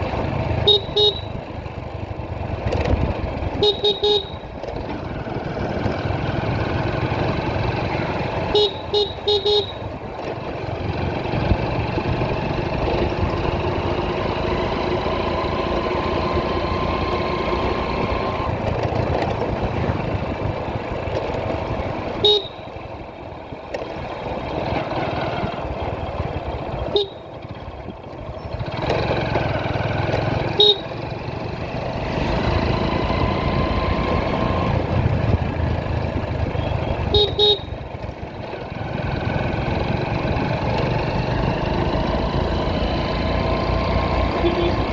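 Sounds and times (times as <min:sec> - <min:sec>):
motorcycle engine and road noise: 0:00.0 - 0:44.9
horn beeps: 0:00.6 - 0:01.4, 0:03.6 - 0:04.5, 0:08.4 - 0:09.9, 0:22.2 - 0:22.7, 0:26.9 - 0:27.3, 0:30.5 - 0:31.0, 0:36.6 - 0:37.8, 0:44.4 - 0:44.9.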